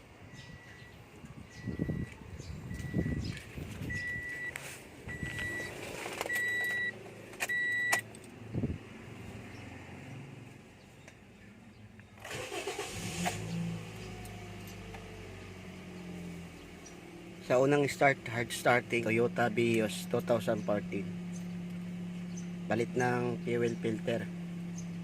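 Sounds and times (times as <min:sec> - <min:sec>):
car engine cranking and idling: 0:00.0 - 0:25.0
short high beeps: 0:00.4 - 0:03.2.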